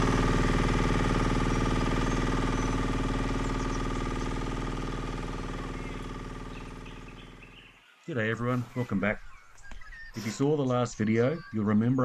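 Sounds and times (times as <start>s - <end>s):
diesel engine idling: 0.0s - 7.7s.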